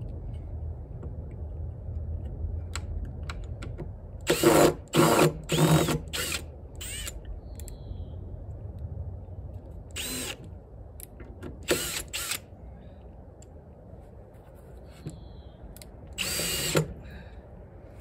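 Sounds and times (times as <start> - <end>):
electric drill motor whine: 4.3 - 7.1, 10.0 - 10.4, 11.7 - 12.4, 16.2 - 17.0.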